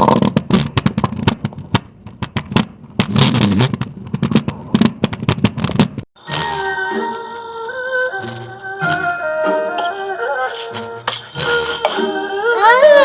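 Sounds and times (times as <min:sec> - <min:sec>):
stomach growling: 0:00.0 - 0:00.7
music with held notes: 0:06.2 - 0:13.0.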